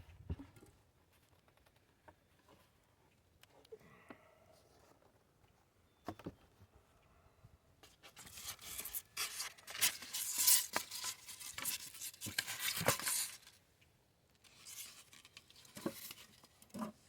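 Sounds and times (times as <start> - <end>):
scraping and rustling: 7.8 - 13.6, 14.4 - 17.0.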